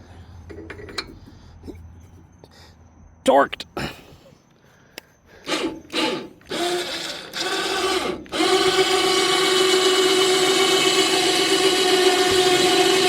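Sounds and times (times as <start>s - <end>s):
electric winch motor whine: 5.4s - 13.0s.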